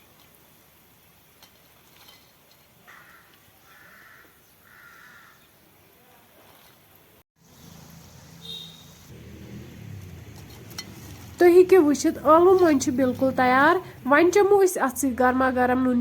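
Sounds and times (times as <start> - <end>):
faint steady hiss: 0.0 - 4.6
crow cawing: 2.9 - 5.5.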